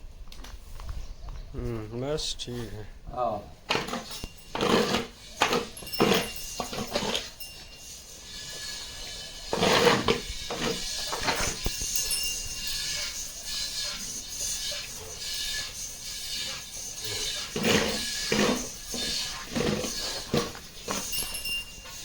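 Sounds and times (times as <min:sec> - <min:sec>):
farm animal calling: 0:08.0 - 0:22.0.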